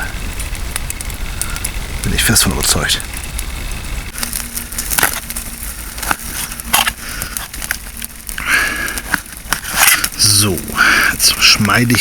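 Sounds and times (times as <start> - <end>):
fire snaps and crunches: 0.0 - 12.0
steady fire hiss: 0.0 - 12.0
wood fire crackling: 0.0 - 12.0.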